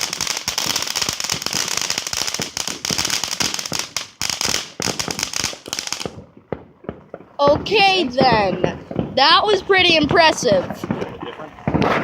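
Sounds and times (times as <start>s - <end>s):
firework hiss: 0.0s - 6.2s
firework crackling pops: 0.0s - 12.0s.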